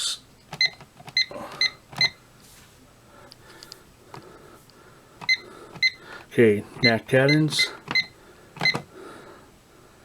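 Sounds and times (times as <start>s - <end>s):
keypad beeps: 0.5s - 2.2s, 5.2s - 6.0s, 6.8s - 8.9s.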